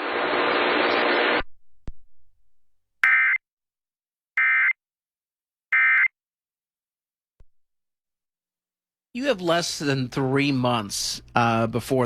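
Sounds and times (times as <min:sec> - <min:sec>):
steady radio hiss: 0:00.0 - 0:01.4.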